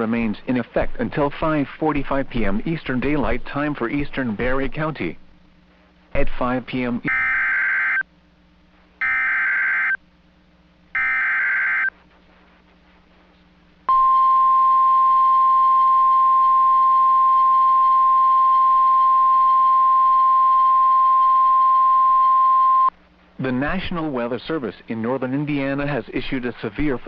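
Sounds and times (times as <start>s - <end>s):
steady warning alarm tone: 7.1s - 8.0s, 9.0s - 10.0s, 11.0s - 12.0s, 13.9s - 22.9s.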